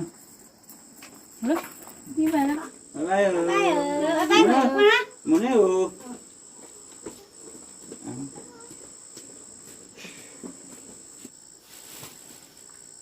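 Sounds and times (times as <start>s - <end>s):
insects trilling: 0.0s - 13.0s.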